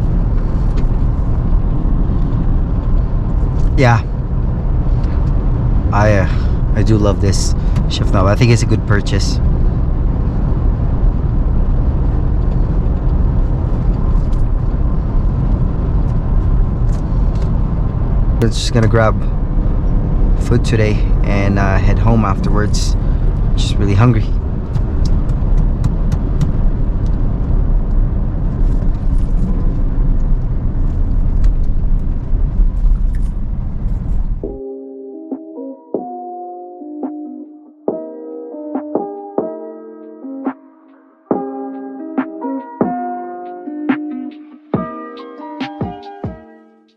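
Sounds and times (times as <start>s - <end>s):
truck engine and road rumble: 0.0s - 34.6s
music: 34.4s - 46.9s.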